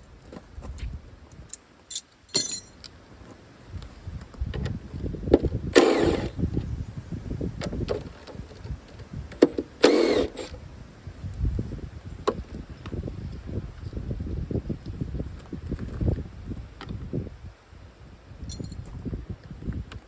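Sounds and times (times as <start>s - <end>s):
tools and parts clicking: 1.4s - 2.9s, 18.5s - 18.9s
power tool motor spinning: 5.7s - 6.4s, 9.8s - 10.6s.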